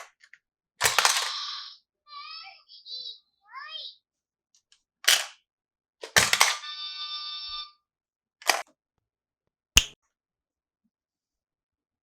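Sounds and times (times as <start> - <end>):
plastic toy pieces clattering: 0.2 - 1.4, 6.0 - 6.6
plastic toy pieces rustling: 0.8 - 1.4
sharp click: 9.8 - 10.0.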